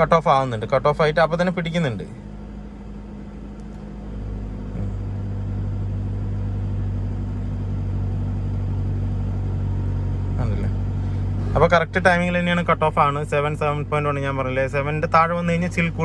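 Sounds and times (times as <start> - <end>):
car engine humming: 0.0 - 16.0.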